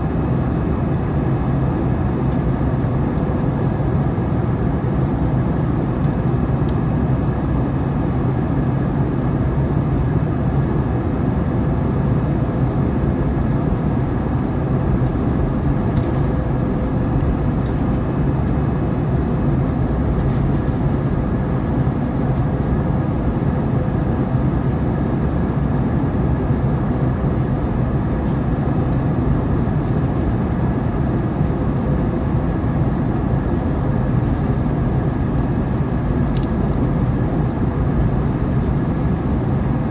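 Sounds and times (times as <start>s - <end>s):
low wind rumble: 0.0s - 27.7s
jet engines drone: 0.0s - 39.9s.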